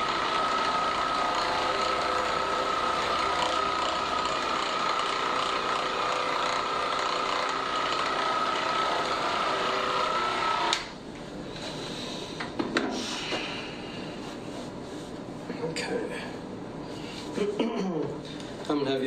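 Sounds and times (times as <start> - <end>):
small motor whining: 0.0 - 10.9.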